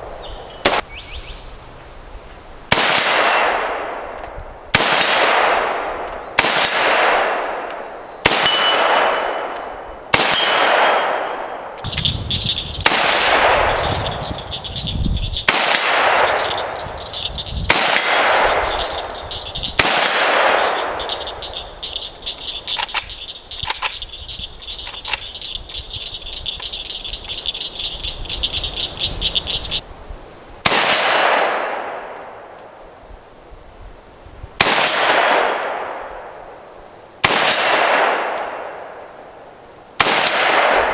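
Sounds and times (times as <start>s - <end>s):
rifle shots echoing: 2.7s - 12.1s, 12.8s - 14.2s, 15.4s - 24.0s, 30.6s - 32.6s, 34.6s - 36.3s, 37.2s - 39.0s, 40.0s - 40.9s.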